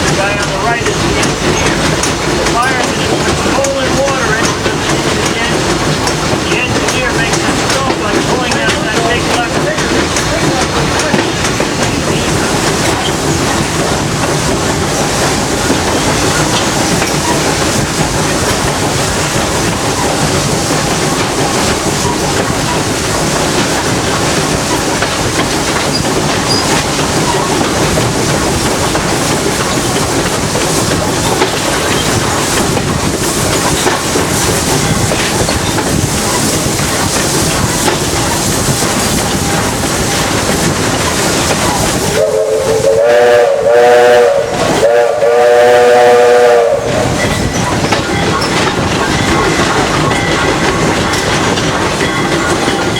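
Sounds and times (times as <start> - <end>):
train rolling on track: 0.0 - 52.9
steam locomotive chime whistle: 42.2 - 48.5.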